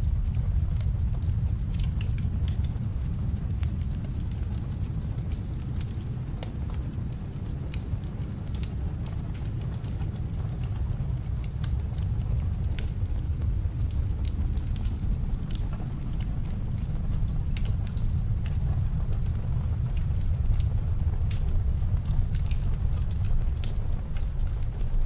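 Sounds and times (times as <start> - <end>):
blizzard wind rumble: 0.0 - 25.0
fire crackling and popping: 0.0 - 25.0.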